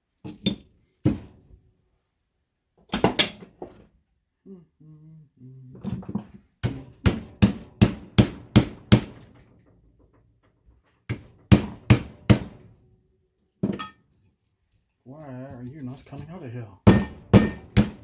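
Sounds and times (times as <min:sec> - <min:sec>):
hammer striking metal casing: 0:16.9 - 0:18.0.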